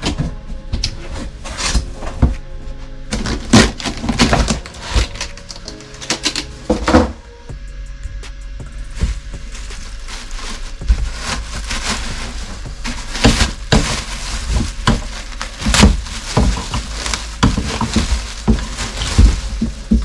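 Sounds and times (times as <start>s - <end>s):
cardboard packaging being handled: 3.2s - 7.2s, 8.7s - 20.0s.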